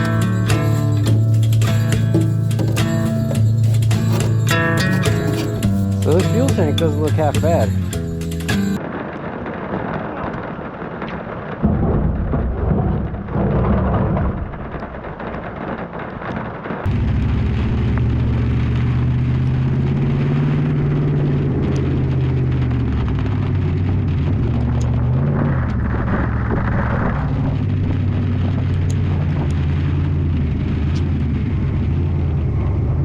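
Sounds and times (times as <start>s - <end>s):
engine humming: 16.9s - 33.0s.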